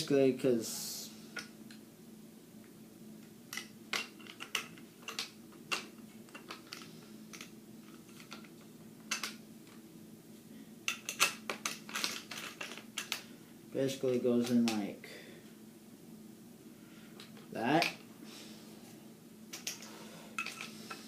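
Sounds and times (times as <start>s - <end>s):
low steady hum: 0.0s - 21.0s
metal parts clicking and tapping: 3.5s - 9.8s, 10.9s - 13.3s, 19.5s - 21.0s.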